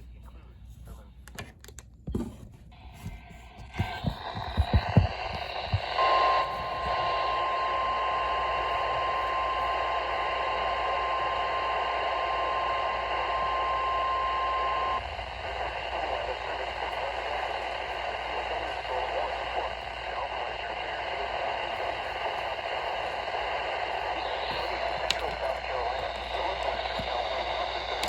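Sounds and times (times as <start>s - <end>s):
radio static hiss: 2.2s - 28.0s
clicks and thumps: 3.7s - 5.9s.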